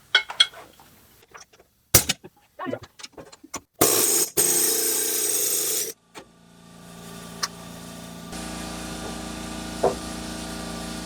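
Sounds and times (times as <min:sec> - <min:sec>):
metal tools clinking and knocking: 0:00.1 - 0:03.6
pneumatic air hammer: 0:03.8 - 0:06.0.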